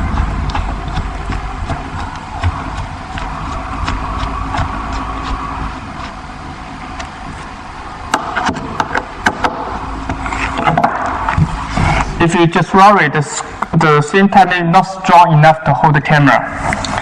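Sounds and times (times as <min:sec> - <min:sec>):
sharp clicks and knocks: 0:08.1 - 0:11.5.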